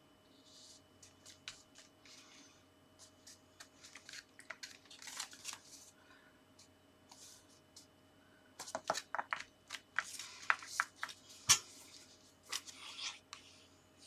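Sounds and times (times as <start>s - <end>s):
paper rustling and tapping: 1.0s - 1.9s, 3.2s - 5.7s, 8.6s - 11.2s.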